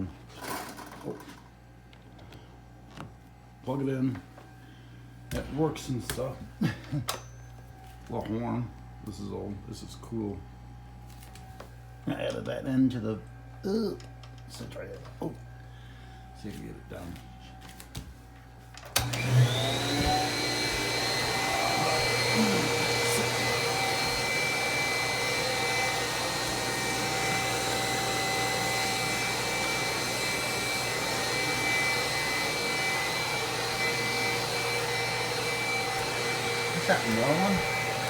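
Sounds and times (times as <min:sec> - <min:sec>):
vacuum cleaner motor whine: 0:18.8 - 0:38.0.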